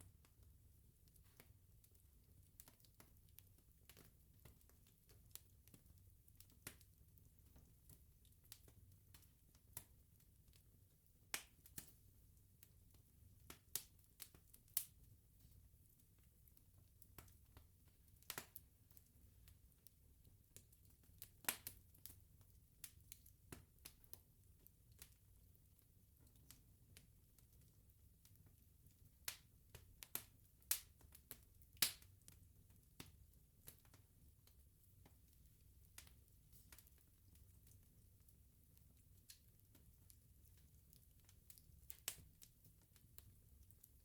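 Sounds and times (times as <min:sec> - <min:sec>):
low rumble of burning: 0:00.0 - 0:44.0
wood bonfire crackling: 0:00.0 - 0:44.0
fire popping: 0:17.0 - 0:19.6, 0:20.6 - 0:28.5, 0:29.1 - 0:44.0.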